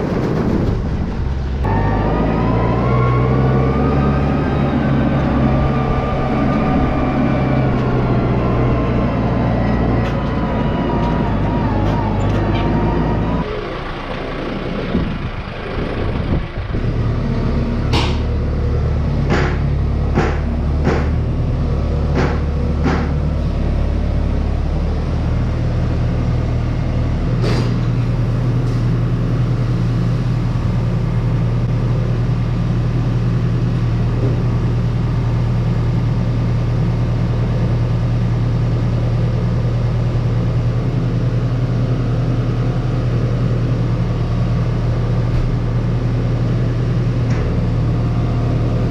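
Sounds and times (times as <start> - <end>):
combine harvester engine drone: 0.0 - 48.9
sharp clicks or knocks: 19.3 - 21.2.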